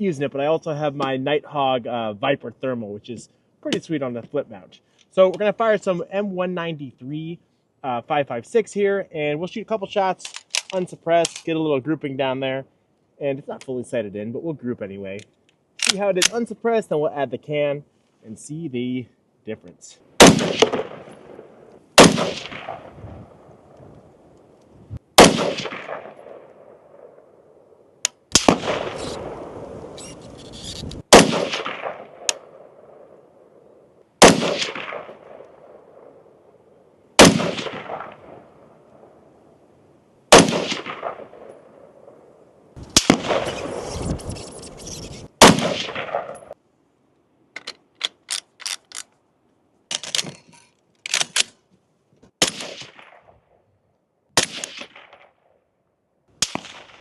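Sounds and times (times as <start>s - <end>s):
quick clusters of sharp cracks: 10.2s - 11.5s, 34.2s - 35.5s, 42.8s - 46.6s, 51.0s - 51.6s, 52.3s - 53.4s, 54.4s - 55.4s, 56.4s - 57.0s
rifle shots: 20.2s - 23.5s, 25.2s - 27.4s, 28.3s - 30.2s, 31.0s - 36.4s, 37.2s - 38.7s, 40.3s - 44.5s, 45.4s - 46.6s, 52.4s - 53.3s, 54.4s - 55.4s, 56.4s - 57.0s.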